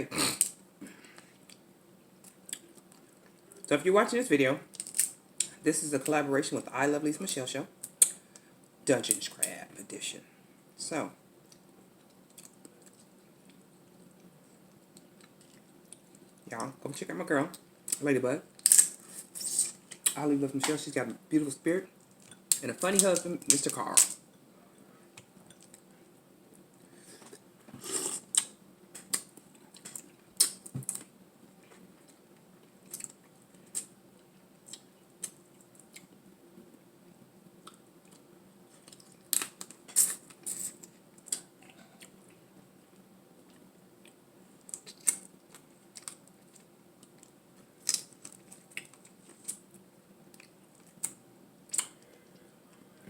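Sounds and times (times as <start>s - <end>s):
close eating clicks and cracks: 0.4s - 3.7s, 4.7s - 5.6s, 11.4s - 16.4s, 17.5s - 20.2s, 22.0s - 24.4s, 25.1s - 25.9s, 28.1s - 36.3s, 37.6s - 52.8s
chewing: 14.9s - 16.4s.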